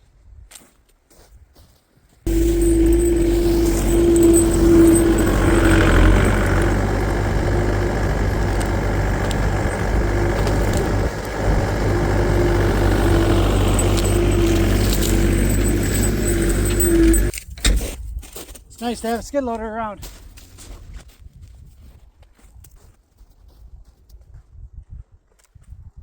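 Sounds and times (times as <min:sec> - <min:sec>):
skid loader engine droning: 0:02.3 - 0:17.3.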